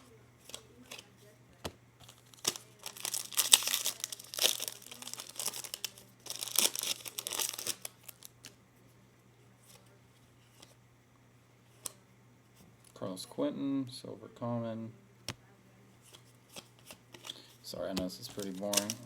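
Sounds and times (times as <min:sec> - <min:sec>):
cards clicking: 0:00.0 - 0:01.1, 0:16.1 - 0:19.0
foil wrapper crinkling and tearing: 0:02.0 - 0:08.6, 0:18.2 - 0:19.0.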